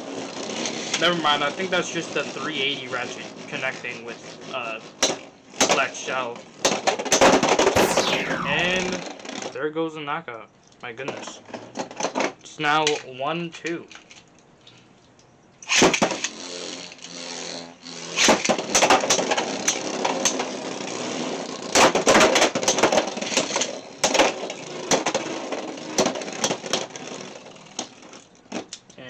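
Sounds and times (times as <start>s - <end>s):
spinning tops launched: 7.7s - 9.0s.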